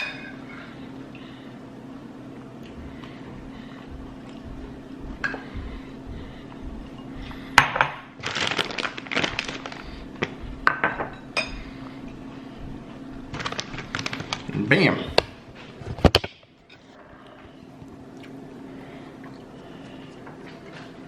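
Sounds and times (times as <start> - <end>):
low hum: 0.0 - 14.5.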